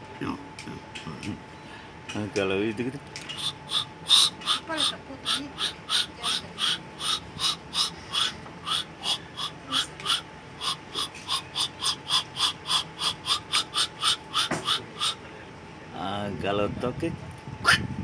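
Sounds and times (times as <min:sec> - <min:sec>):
man mimicking animal call: 0:03.3 - 0:15.2, 0:17.6 - 0:18.0.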